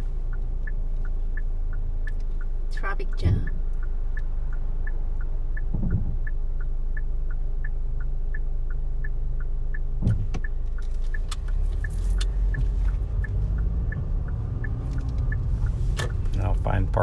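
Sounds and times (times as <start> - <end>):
car engine and road rumble: 0.0 - 17.0
turn signal ticking: 0.0 - 17.0
short thump: 5.7 - 6.3, 10.0 - 10.5.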